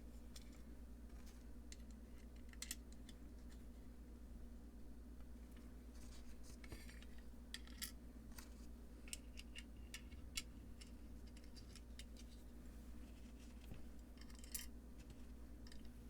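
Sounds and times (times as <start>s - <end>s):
metal washers and nuts clicking: 14.1s - 14.7s.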